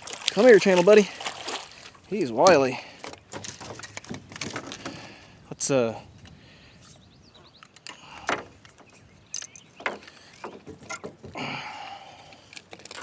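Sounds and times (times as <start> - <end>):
fish splashing in water: 0.0 - 4.0
fish thrashing knocks: 0.0 - 5.2.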